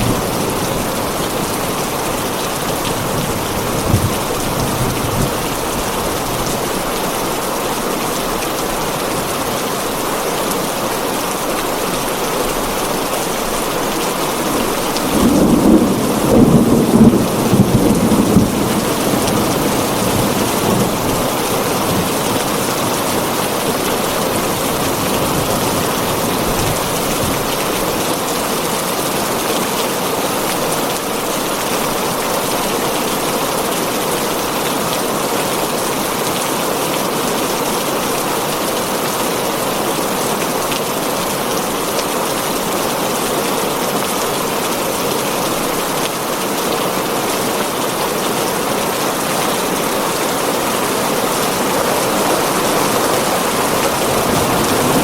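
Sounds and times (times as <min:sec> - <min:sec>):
heavy rain on a tin roof: 0:00.0 - 0:55.0
thunder rumbling: 0:14.4 - 0:22.2, 0:51.3 - 0:55.0.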